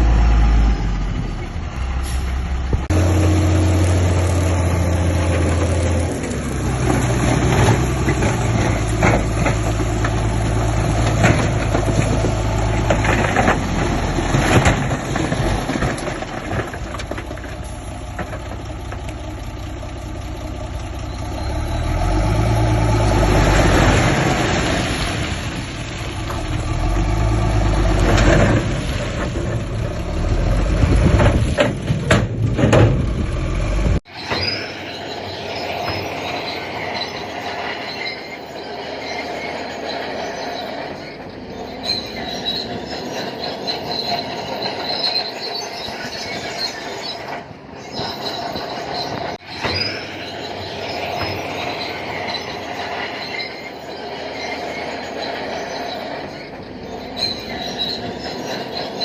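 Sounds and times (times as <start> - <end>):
diesel machinery engine: 0.0 - 59.0
metal clanks and knocks: 5.2 - 19.3, 30.8 - 37.4.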